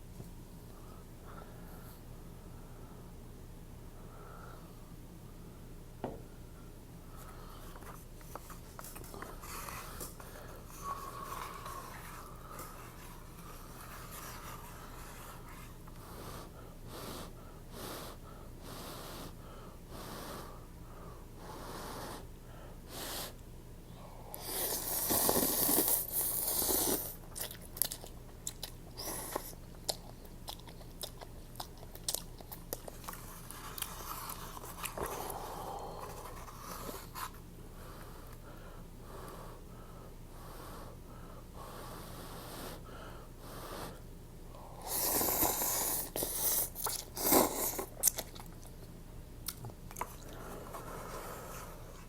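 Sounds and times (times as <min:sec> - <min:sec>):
loud noodle slurp: 0:24.4 - 0:27.1, 0:44.8 - 0:47.9
wet chewing and mouth smacks: 0:27.2 - 0:34.0, 0:46.0 - 0:50.4
sharp chewing clicks: 0:27.3 - 0:33.2.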